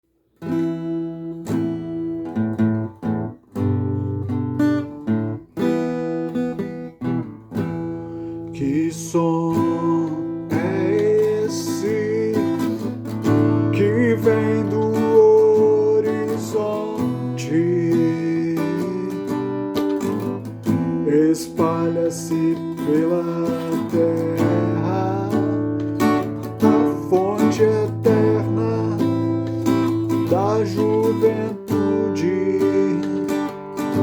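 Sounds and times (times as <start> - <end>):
acoustic guitar strumming: 0.4 - 34.0
person singing: 7.9 - 34.0.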